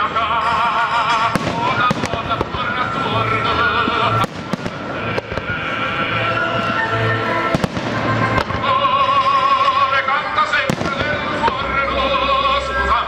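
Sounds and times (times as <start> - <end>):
fireworks cracks and bangs: 1.1 - 6.8, 7.4 - 9.8, 10.4 - 12.4.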